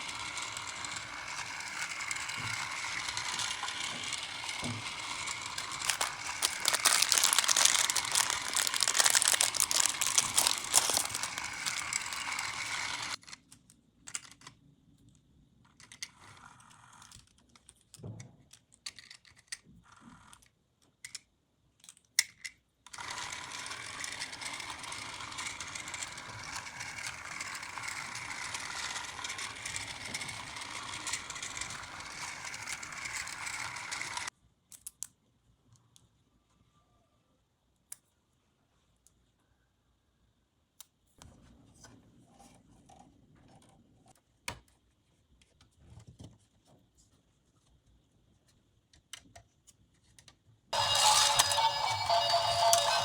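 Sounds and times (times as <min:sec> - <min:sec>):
toy train motor running: 0:00.0 - 0:13.3, 0:22.9 - 0:34.3, 0:50.8 - 0:53.0
plastic toy pieces clicking: 0:00.0 - 0:14.6, 0:18.5 - 0:19.6, 0:21.0 - 0:35.2.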